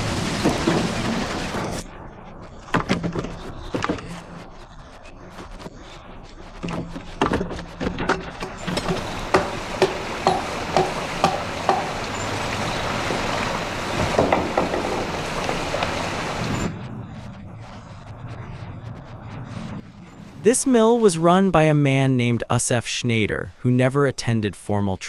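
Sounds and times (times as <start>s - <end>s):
wooden knocks of sawmill: 0.0s - 1.6s, 6.6s - 16.4s
rushing water: 0.0s - 1.8s, 8.4s - 16.8s.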